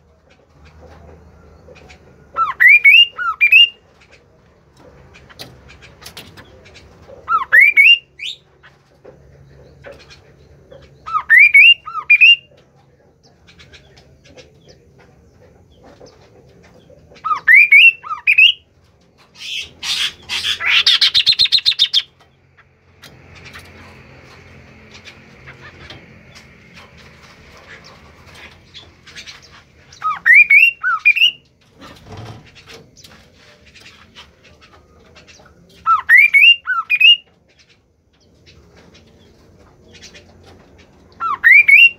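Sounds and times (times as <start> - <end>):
bird whistling rising notes: 2.4 - 3.8, 11.1 - 12.4, 30.0 - 31.4, 35.9 - 37.2, 41.2 - 41.9.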